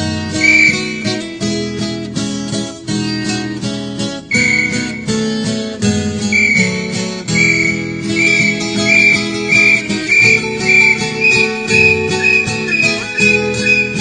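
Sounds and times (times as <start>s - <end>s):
plucked folk guitar: 0.0s - 14.0s
bird's high note: 0.4s - 1.4s, 4.3s - 5.4s, 6.3s - 14.0s.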